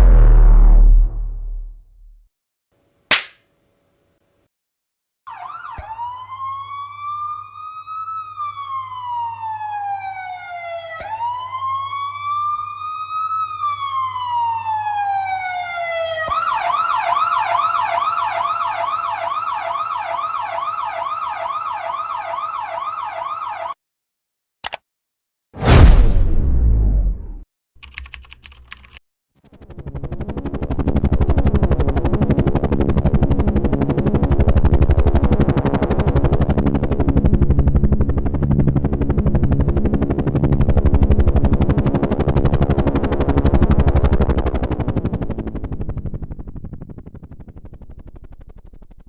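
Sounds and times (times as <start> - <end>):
emergency vehicle siren: 5.3 - 23.8
click: 24.6 - 24.8
loud hit: 25.6 - 27.4.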